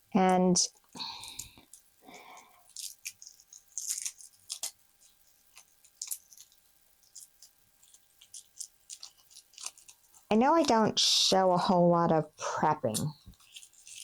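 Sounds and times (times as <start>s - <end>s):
papery skins crackling: 0.0s - 11.1s, 12.8s - 14.0s.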